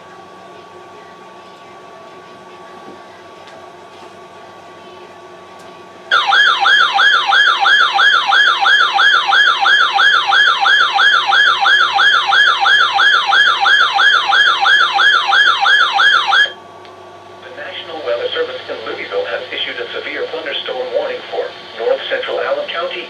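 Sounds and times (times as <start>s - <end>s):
electronic alarm siren: 6.1s - 16.6s.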